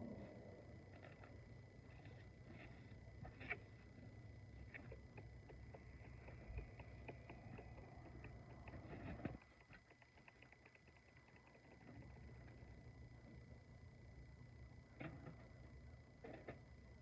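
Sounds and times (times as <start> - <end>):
faint low rumble: 0.0 - 9.8
light ticks: 4.6 - 12.6.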